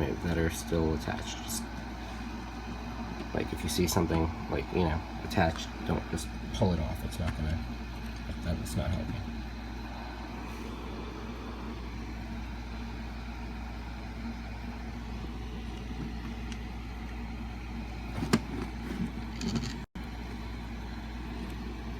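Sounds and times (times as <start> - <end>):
low background hum: 0.0 - 21.9.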